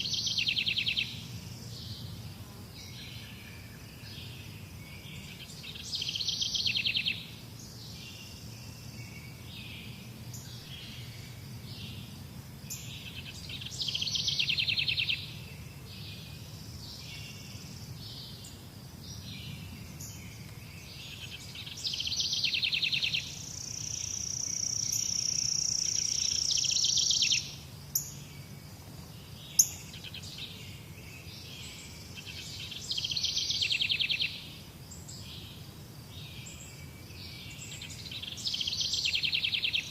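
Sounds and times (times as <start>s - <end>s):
songbird trilling: 0.0s - 1.2s, 5.2s - 7.3s, 12.7s - 15.4s, 20.0s - 28.2s, 29.5s - 30.6s, 31.6s - 34.5s, 37.5s - 39.9s.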